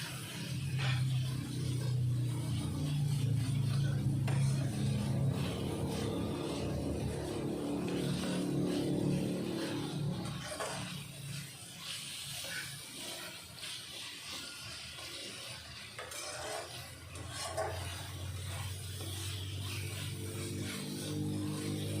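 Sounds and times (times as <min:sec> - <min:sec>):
onions sizzling: 0:00.0 - 0:22.0
spatula scraping a pan: 0:00.0 - 0:22.0.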